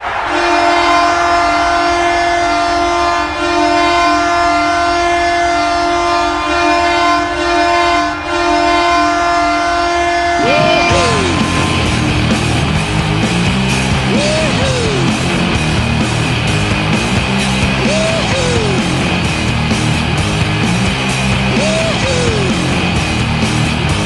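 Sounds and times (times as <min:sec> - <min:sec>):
arena goal horn blast: 0:00.0 - 0:15.2
swooping tone: 0:10.4 - 0:16.0.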